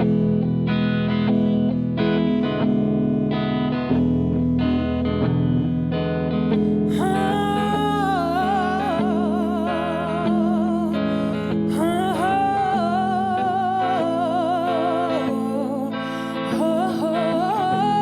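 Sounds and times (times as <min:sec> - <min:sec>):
guitar accompaniment: 0:00.0 - 0:18.0
woman singing with vibrato: 0:06.8 - 0:18.0.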